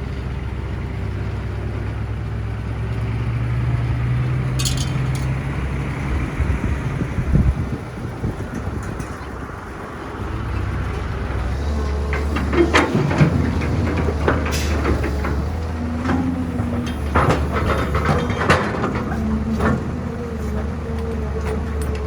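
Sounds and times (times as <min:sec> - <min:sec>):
diesel excavator rumbling: 0:00.0 - 0:22.0.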